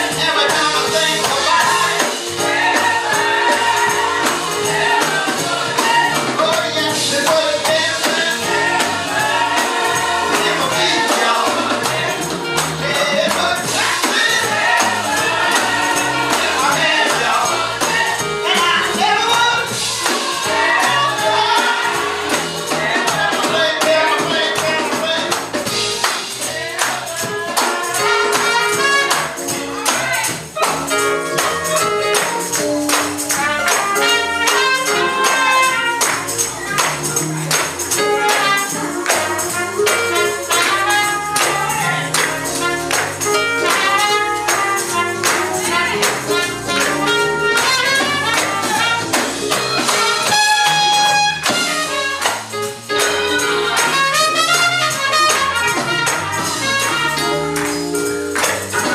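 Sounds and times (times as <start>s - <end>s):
tambourine shaking: 0.0s - 58.9s
upbeat music: 0.0s - 58.9s.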